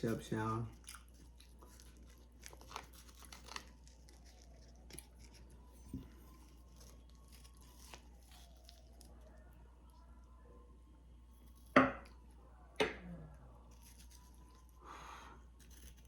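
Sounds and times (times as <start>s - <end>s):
chips crunching being chewed: 0.1s - 9.4s, 13.6s - 16.0s.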